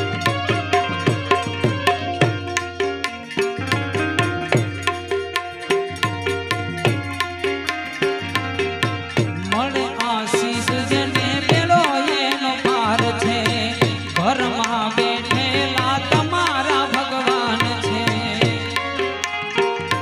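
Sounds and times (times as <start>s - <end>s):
gliding folk melody: 0.0s - 12.1s
hand drum beat: 0.0s - 20.0s.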